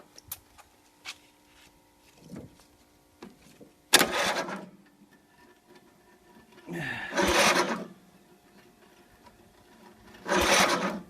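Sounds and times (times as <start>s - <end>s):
lawn mower starter burst: 3.9s - 4.8s, 6.9s - 8.0s, 9.7s - 11.0s.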